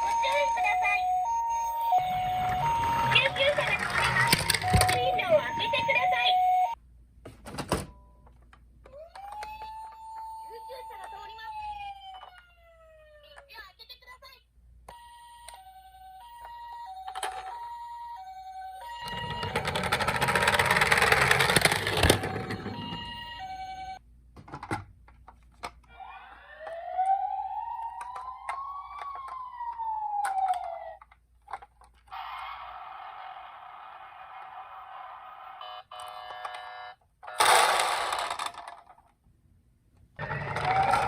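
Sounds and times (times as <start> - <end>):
siren wail sweeping: 0.0 - 6.8, 9.2 - 13.2, 26.0 - 31.0, 40.2 - 41.0
toy siren hi-lo call: 0.0 - 6.8, 8.9 - 13.4, 14.9 - 21.2, 22.2 - 24.0, 25.9 - 31.0, 40.2 - 41.0.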